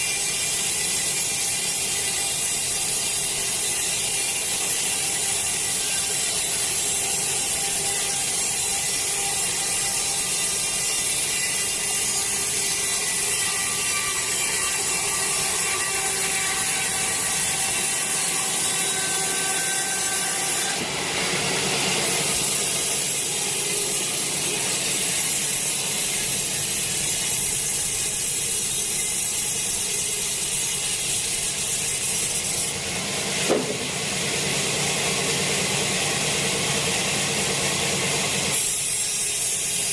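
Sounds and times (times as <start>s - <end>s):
sawmill machinery sawing log: 0.0s - 39.9s
short knock: 33.5s - 34.0s.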